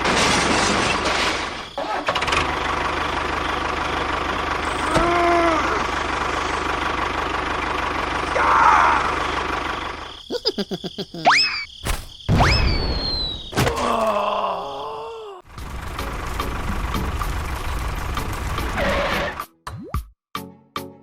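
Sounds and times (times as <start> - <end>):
quick rising whistles: 12.4 - 13.6.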